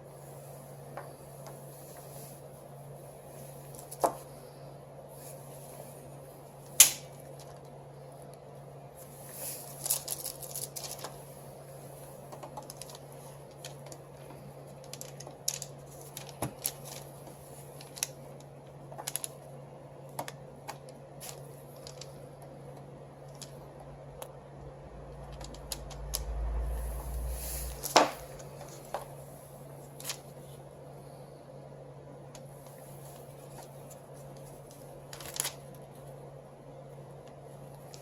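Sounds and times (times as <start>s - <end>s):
steady low hum: 0.0s - 38.0s.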